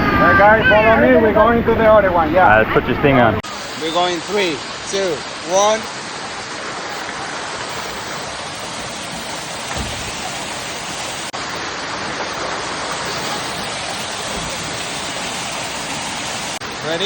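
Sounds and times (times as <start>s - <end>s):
waterfall rushing into pool: 0.0s - 17.0s.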